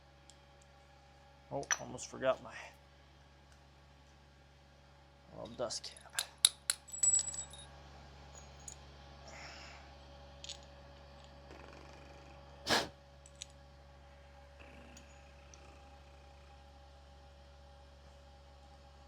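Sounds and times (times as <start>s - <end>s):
metal tools clicking and clattering: 6.2s - 7.7s.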